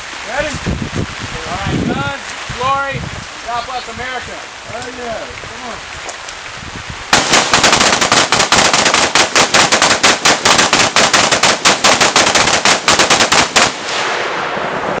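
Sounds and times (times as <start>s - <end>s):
rain hiss: 0.0s - 15.0s
rapid gunfire: 7.1s - 15.0s.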